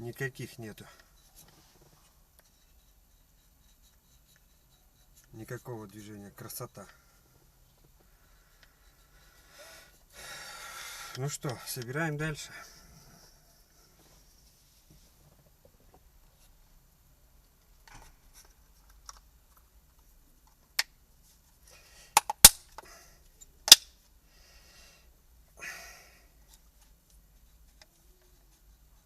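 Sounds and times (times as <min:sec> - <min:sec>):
parts rustling and tapping: 0:17.5 - 0:21.6, 0:26.4 - 0:29.0
loud plastic clicks: 0:22.2 - 0:22.8, 0:23.6 - 0:23.9.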